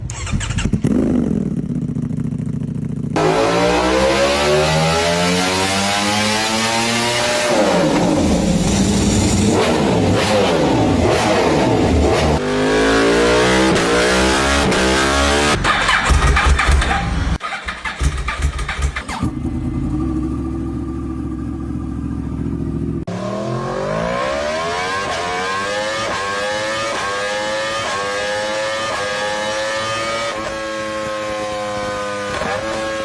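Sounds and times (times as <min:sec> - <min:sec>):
engines revving hard: 0:03.2 - 0:19.4, 0:23.0 - 0:33.0.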